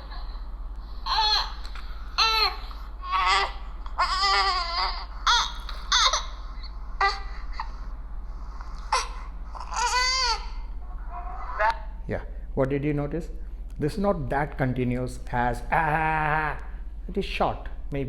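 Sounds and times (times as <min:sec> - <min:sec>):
infant crying: 0:00.0 - 0:07.8, 0:08.8 - 0:11.9.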